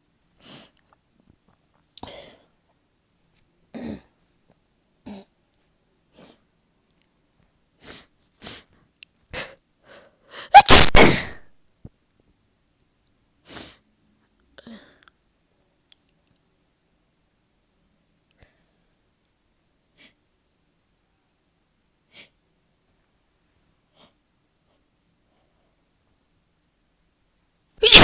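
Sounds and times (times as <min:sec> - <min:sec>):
quiet breaths: 0:00.0 - 0:10.5, 0:13.4 - 0:16.6, 0:18.0 - 0:20.4, 0:22.0 - 0:26.6
person sneezing: 0:10.5 - 0:11.4, 0:27.8 - 0:28.0.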